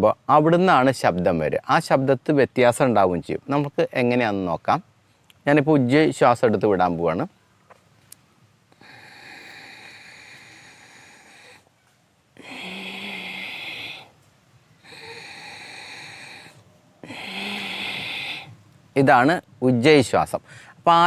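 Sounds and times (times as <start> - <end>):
man breathing through throat: 8.8 - 11.7, 12.4 - 14.2, 14.8 - 18.6, 20.4 - 20.8.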